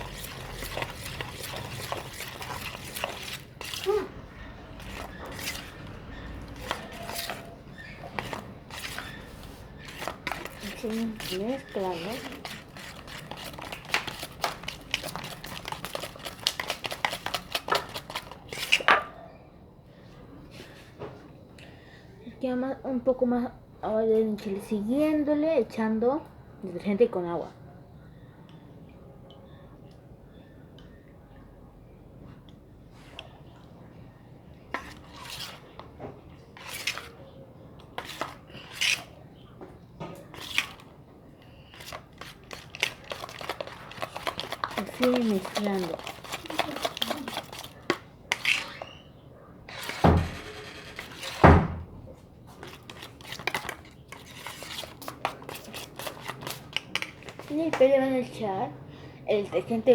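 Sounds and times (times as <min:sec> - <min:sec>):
spoon scraping a dish: 0:00.0 - 0:18.9, 0:34.8 - 0:35.8, 0:36.5 - 0:37.2, 0:37.9 - 0:39.2, 0:40.2 - 0:40.9, 0:41.5 - 0:49.1, 0:49.7 - 0:51.4, 0:52.6 - 0:57.8
spoon scraping and clinking on dish: 0:04.8 - 0:16.1, 0:49.7 - 0:51.4.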